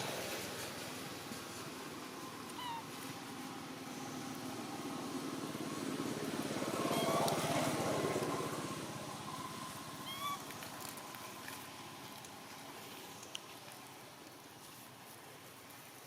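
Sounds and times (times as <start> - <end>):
motorcycle passing: 2.2 - 10.9.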